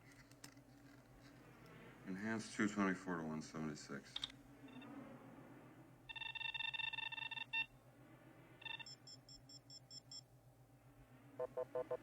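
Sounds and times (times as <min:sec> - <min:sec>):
faint low pulsing hum: 0:07.6 - 0:12.0
computer beeps: 0:08.6 - 0:09.2, 0:11.4 - 0:12.0
high-pitched pulsing chirp: 0:11.4 - 0:12.0.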